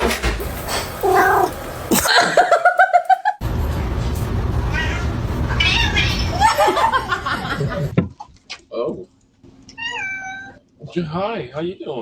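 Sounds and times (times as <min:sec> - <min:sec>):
cat meowing: 0:01.0 - 0:01.6
cat pulsed calls: 0:01.0 - 0:01.6.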